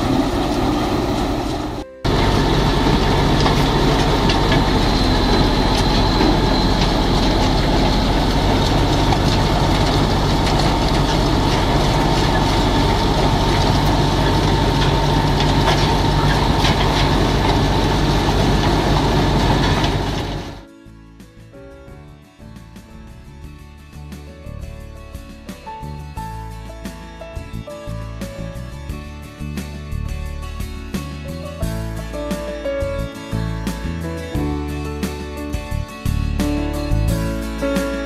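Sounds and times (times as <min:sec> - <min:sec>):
engine running with rattles: 0:00.0 - 0:20.6.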